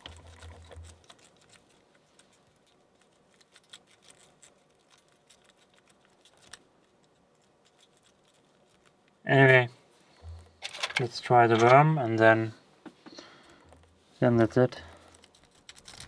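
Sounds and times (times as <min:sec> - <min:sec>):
lock pick clicking and scratching: 0:02.5 - 0:08.9, 0:10.6 - 0:11.8, 0:15.1 - 0:16.0.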